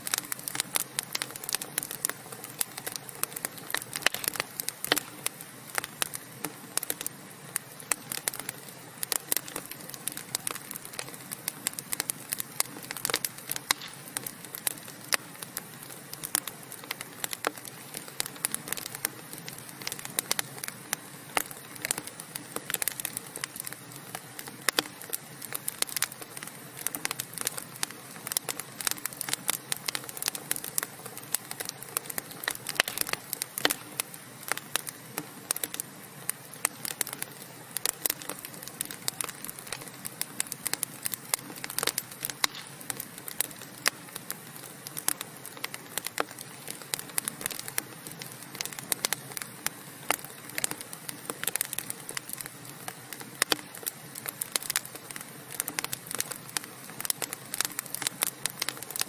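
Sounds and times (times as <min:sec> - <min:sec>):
fire hissing: 0:00.0 - 0:59.0
wood fire crackling: 0:00.0 - 0:59.0.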